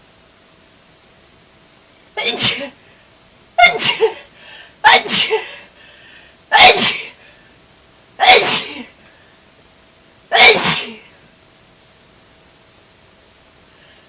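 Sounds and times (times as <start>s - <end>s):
person sneezing: 2.2s - 2.8s, 3.6s - 5.7s, 6.5s - 7.2s, 8.2s - 9.0s, 10.3s - 11.2s.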